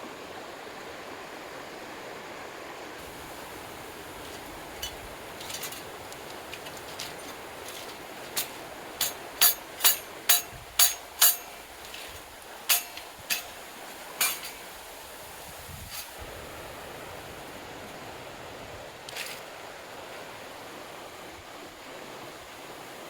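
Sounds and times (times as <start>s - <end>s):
stream rushing: 0.0s - 23.0s
sharp knocks with metallic ring: 8.4s - 11.7s, 12.7s - 13.6s, 14.2s - 14.6s.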